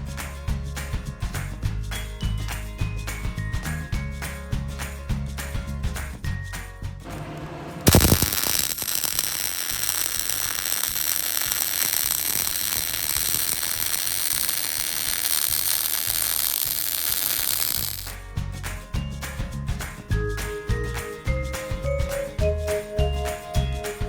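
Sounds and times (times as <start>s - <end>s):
power tool working metal: 7.1s - 18.1s.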